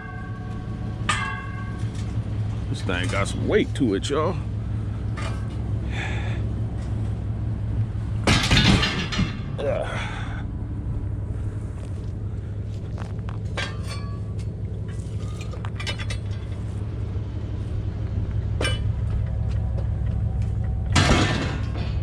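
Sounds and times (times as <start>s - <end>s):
pickup truck engine rumbling: 0.0s - 22.0s
light metallic clinks and knocks: 13.0s - 16.8s.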